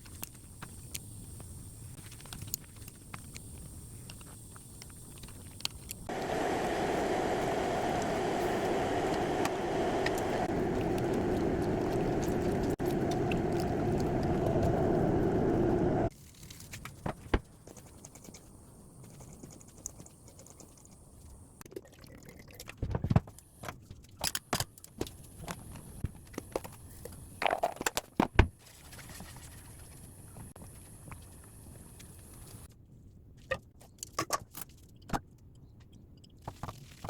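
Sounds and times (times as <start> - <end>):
steady rushing noise: 6.1 - 16.1.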